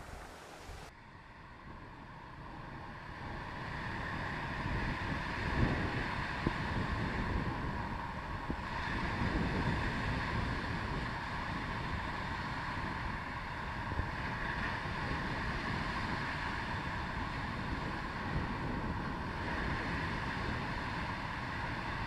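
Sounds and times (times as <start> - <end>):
steady hiss: 0.0 - 0.9
wind rumbling on microphone: 0.0 - 22.0.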